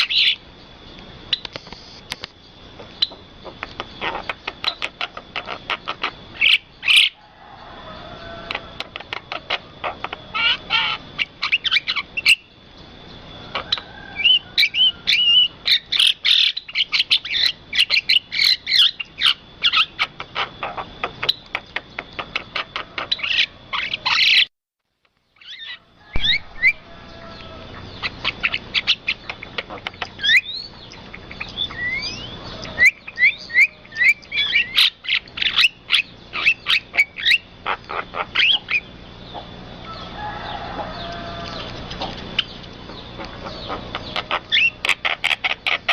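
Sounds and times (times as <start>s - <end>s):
songbirds chirping: 0.0s - 45.9s.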